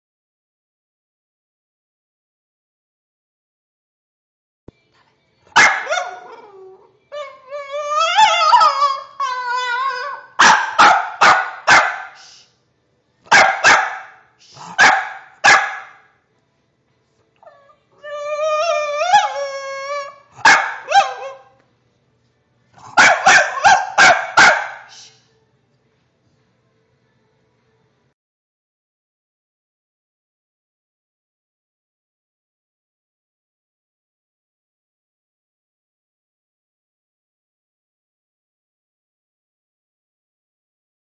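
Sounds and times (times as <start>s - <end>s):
dog barking: 5.6s - 6.3s, 10.4s - 12.2s, 13.3s - 16.1s, 20.4s - 21.5s, 22.8s - 25.0s
dog screeching: 7.2s - 12.2s, 18.2s - 21.5s.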